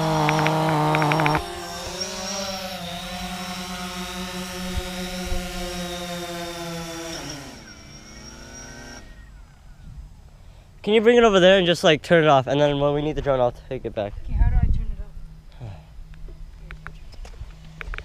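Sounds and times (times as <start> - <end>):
drone propellers humming: 0.0 - 10.8, 14.8 - 18.0.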